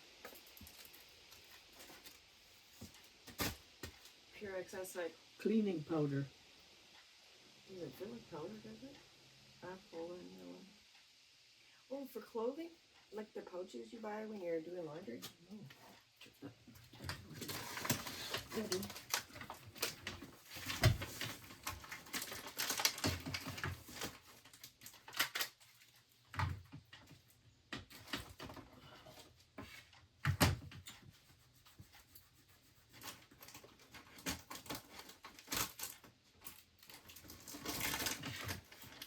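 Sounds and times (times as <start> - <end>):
packaging rustling and clicking: 16.8 - 26.6, 33.0 - 39.0.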